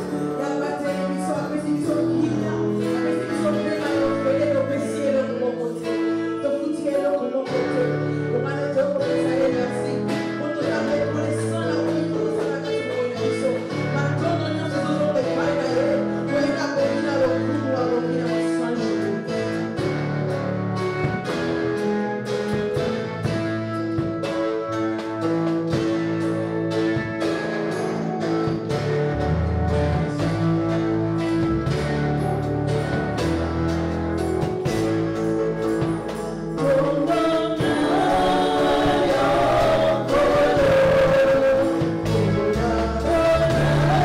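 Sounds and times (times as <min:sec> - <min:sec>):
plucked guitar band: 0:00.0 - 0:44.0
people singing: 0:36.6 - 0:44.0.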